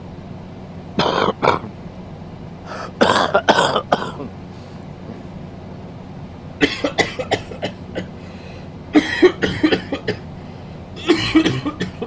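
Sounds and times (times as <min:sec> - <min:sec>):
man coughing: 0:01.0 - 0:01.7, 0:02.7 - 0:04.3, 0:06.6 - 0:08.2, 0:08.9 - 0:10.2, 0:11.0 - 0:12.0.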